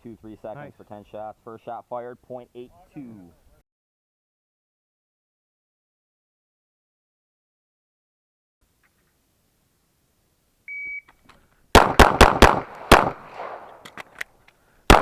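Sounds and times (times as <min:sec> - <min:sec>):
shot timer beep: 0:10.7 - 0:11.1
faint gunshots: 0:11.8 - 0:14.0
handgun shots: 0:11.8 - 0:14.3.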